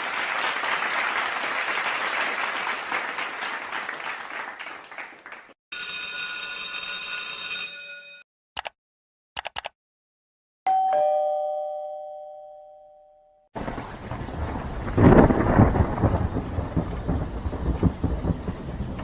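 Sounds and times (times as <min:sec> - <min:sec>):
two-tone doorbell chime: 0:05.7 - 0:08.2, 0:10.7 - 0:13.5
steady rain: 0:13.6 - 0:19.0
thunder rumble: 0:13.6 - 0:19.0.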